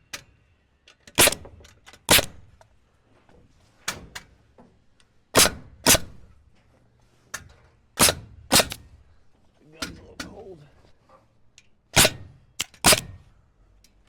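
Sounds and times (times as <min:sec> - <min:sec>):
nails driven into wood: 0:01.1 - 0:02.6, 0:05.3 - 0:06.2, 0:08.0 - 0:09.0, 0:11.9 - 0:13.2.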